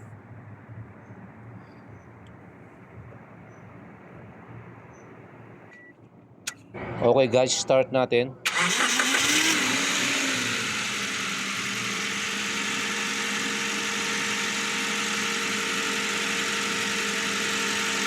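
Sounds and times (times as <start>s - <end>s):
van engine idling: 8.4s - 18.0s.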